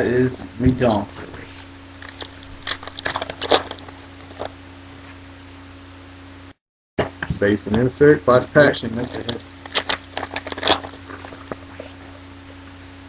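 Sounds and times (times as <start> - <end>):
steady low hum: 0.0 - 13.0
foil wrapper tearing and crinkling: 2.0 - 4.5, 9.0 - 11.7.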